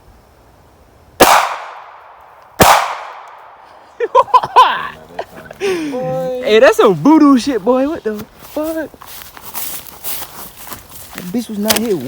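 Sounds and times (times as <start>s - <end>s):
gunshots with echo: 1.2s - 3.6s.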